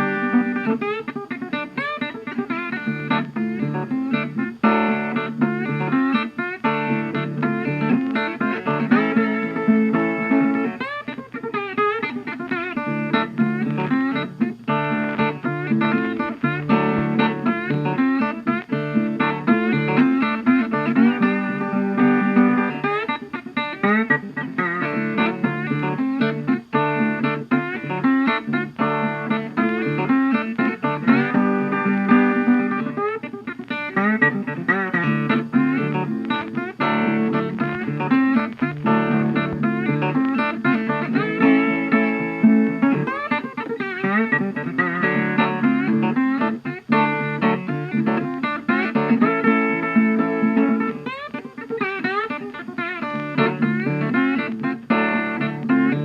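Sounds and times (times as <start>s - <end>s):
bluesy guitar music: 0.0s - 56.0s.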